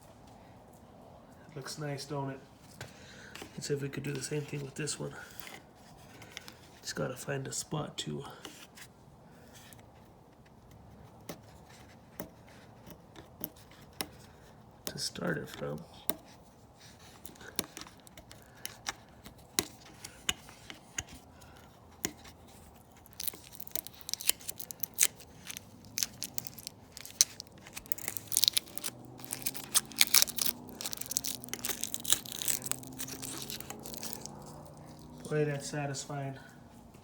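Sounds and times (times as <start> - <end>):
plastic film peeling and crackling: 9.8 - 35.3.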